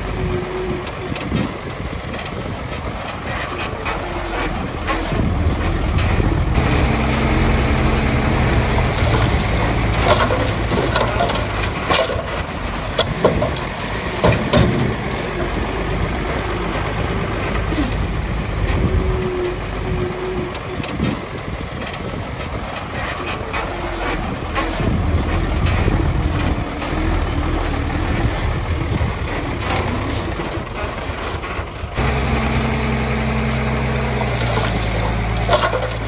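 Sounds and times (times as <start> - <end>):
diesel engine under load: 0.0 - 36.0
metal clanks: 1.1 - 19.0, 34.2 - 36.0.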